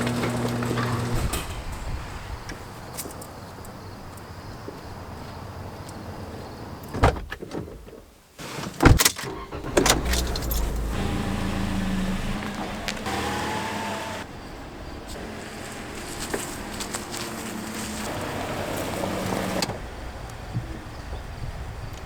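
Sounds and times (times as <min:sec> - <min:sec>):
car engine running: 0:00.0 - 0:02.5, 0:09.4 - 0:21.9
keys rattling: 0:09.8 - 0:11.0.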